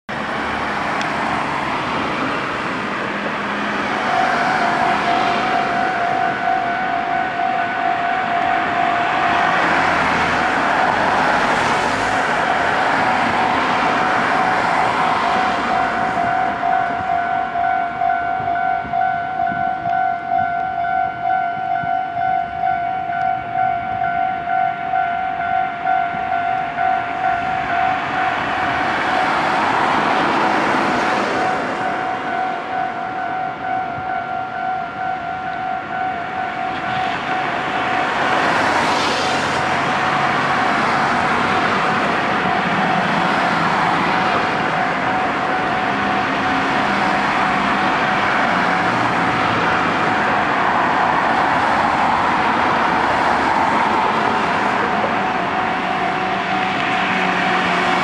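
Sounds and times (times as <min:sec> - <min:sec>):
train rushing past: 0:00.2 - 0:58.0
level crossing warning bell: 0:03.6 - 0:58.0.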